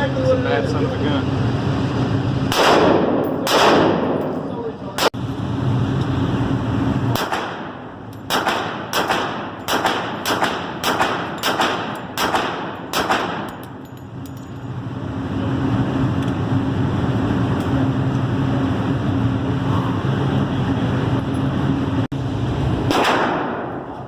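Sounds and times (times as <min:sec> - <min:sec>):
steady low hum: 0:00.0 - 0:24.0
semi-automatic gunshots: 0:02.5 - 0:04.3, 0:07.2 - 0:13.6, 0:22.9 - 0:24.0.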